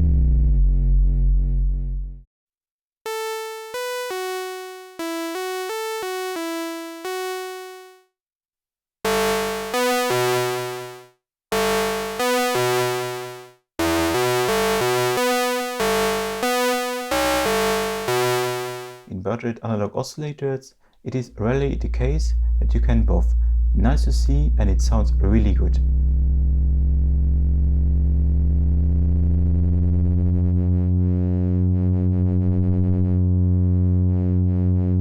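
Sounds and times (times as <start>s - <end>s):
synthesizer playing buzzy melody: 3.1s - 8.0s, 9.0s - 19.1s, 21.4s - 26.2s.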